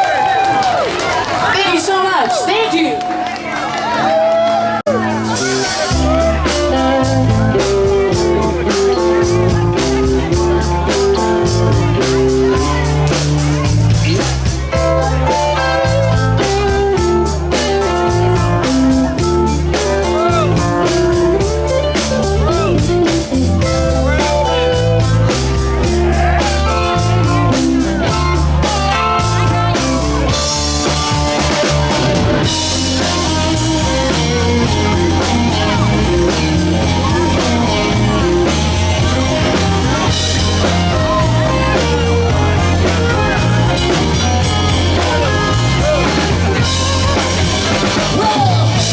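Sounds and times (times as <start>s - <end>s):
bass guitar: 4.9s - 48.9s
drum kit beat: 4.9s - 48.9s
electric guitar: 4.9s - 48.9s.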